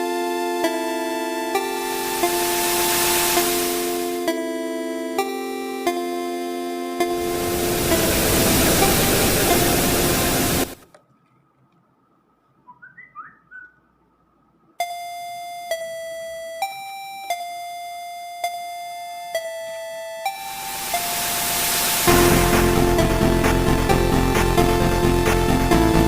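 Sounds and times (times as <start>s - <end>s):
chime-like electronic music: 0.0s - 5.7s, 7.0s - 10.8s, 14.8s - 26.0s
loud hissing noise: 1.8s - 4.1s, 7.1s - 10.8s, 20.6s - 23.6s.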